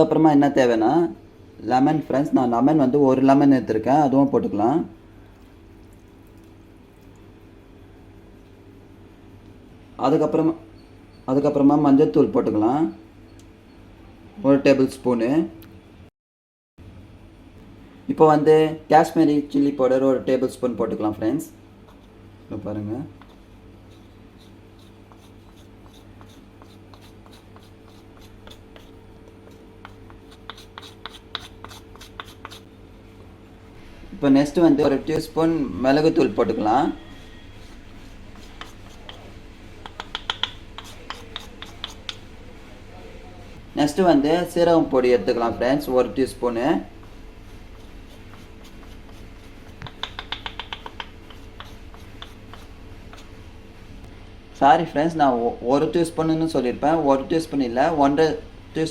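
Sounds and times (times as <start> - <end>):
steady low hum: 0.0 - 16.1, 16.8 - 58.9
spoon scraping a bowl: 21.8 - 22.2, 23.1 - 32.7, 36.0 - 42.2, 47.0 - 53.3
low hum: 32.7 - 39.9
spoon tapping against vessel: 39.8 - 42.2, 49.8 - 51.7.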